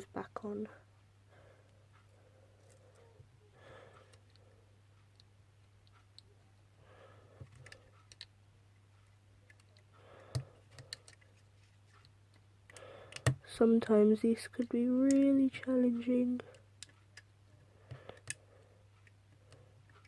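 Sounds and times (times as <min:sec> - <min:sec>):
steady low hum: 0:00.0 - 0:20.0
small clicks and taps of phone parts: 0:07.4 - 0:08.4, 0:09.0 - 0:13.5, 0:16.5 - 0:18.4.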